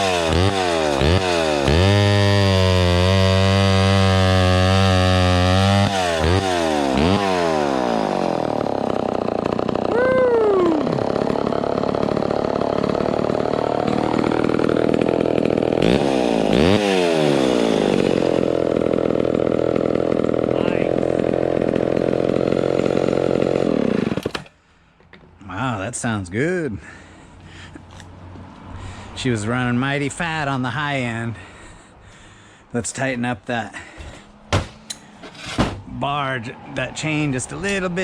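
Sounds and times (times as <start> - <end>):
chainsaw revving: 0.0 - 24.5, 33.8 - 35.9.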